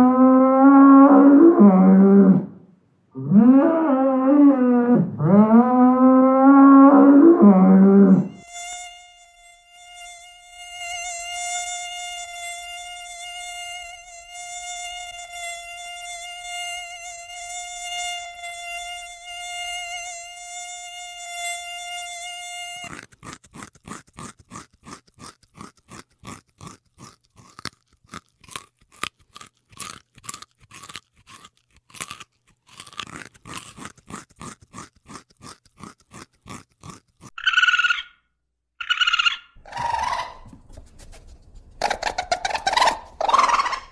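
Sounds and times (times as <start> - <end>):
short rasping pulses: 7.0 - 23.0
insect wings buzzing: 8.1 - 22.9.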